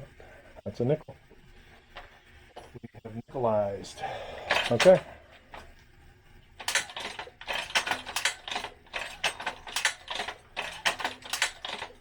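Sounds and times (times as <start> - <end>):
metallic clicks and clatter: 4.5 - 5.7, 6.5 - 12.0.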